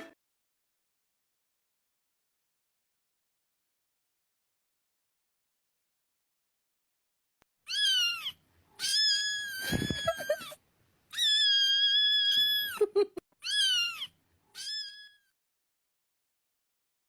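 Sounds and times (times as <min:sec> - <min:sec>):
cat meowing: 0:07.7 - 0:10.5, 0:11.1 - 0:12.8, 0:13.4 - 0:15.4.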